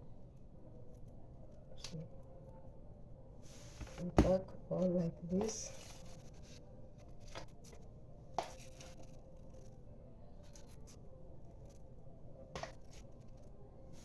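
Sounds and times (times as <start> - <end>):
faint steady hum: 0.0 - 14.0
plastic containers being handled: 3.5 - 4.4.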